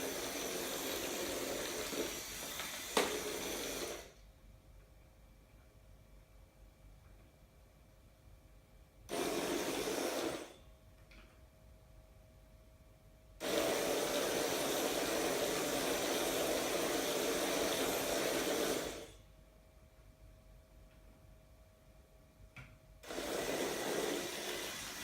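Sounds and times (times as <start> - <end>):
electric motor and gears running: 0.0 - 4.2, 9.1 - 10.6, 13.4 - 19.2, 23.0 - 25.0.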